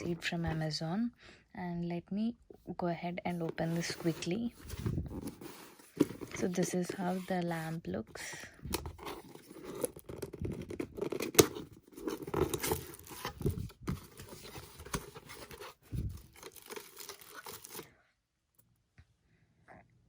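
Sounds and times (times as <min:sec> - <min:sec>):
packaging crinkling and tearing: 0:08.9 - 0:17.9.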